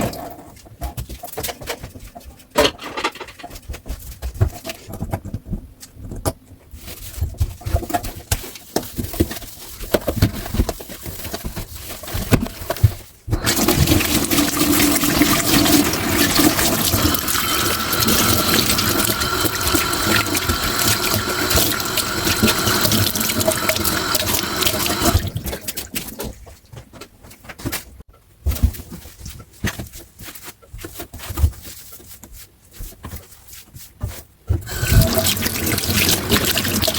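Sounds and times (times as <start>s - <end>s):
dishes knocking and clinking: 2.5s - 3.7s
tap water running into sink: 13.4s - 26.0s, 34.6s - 36.9s.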